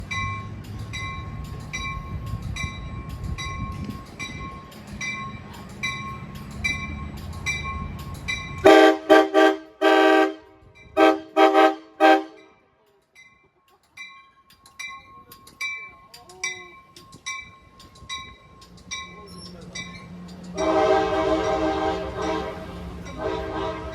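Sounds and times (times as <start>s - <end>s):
crossing warning bell ringing: 0.0s - 23.9s
train horn blasts: 8.6s - 12.6s, 20.6s - 23.9s.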